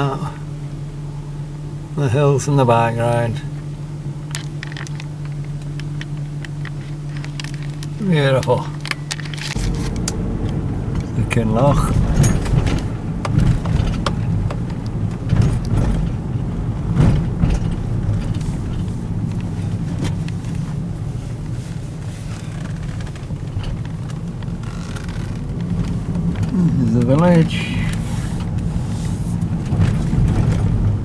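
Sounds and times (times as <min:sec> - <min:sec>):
car engine and road hum: 0:00.0 - 0:31.0
small knocks and rattles: 0:04.2 - 0:31.0.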